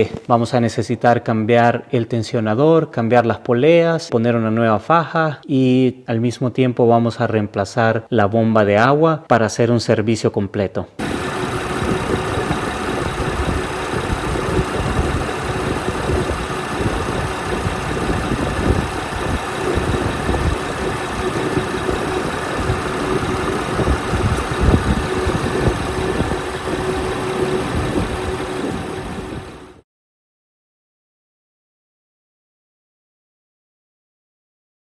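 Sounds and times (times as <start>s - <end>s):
car engine idling: 11.0s - 29.8s
faint steady whine: 11.0s - 29.8s.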